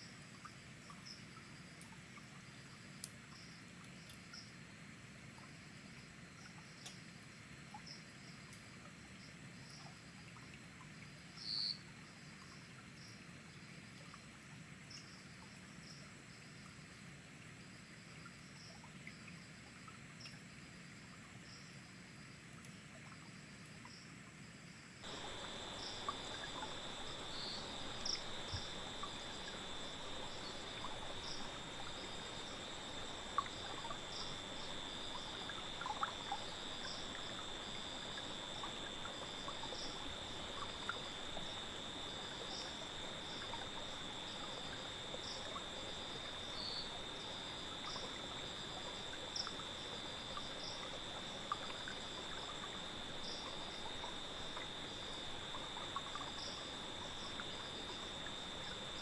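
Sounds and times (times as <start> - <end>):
faint ticks: 0.0 - 4.6, 5.3 - 11.8, 13.9 - 16.8, 18.2 - 21.7, 22.3 - 24.2, 25.0 - 59.0
insect chirps: 0.0 - 59.0
insects trilling: 11.3 - 13.2, 17.7 - 59.0.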